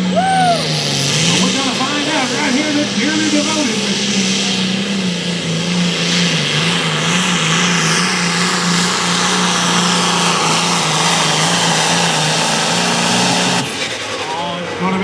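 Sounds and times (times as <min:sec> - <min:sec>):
tractor engine under full load: 0:00.0 - 0:15.0.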